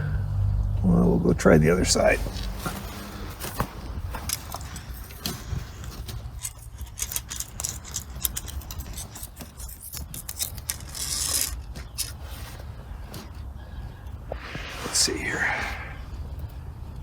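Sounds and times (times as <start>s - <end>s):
metal scraping inside axle housing: 2.0s - 12.5s.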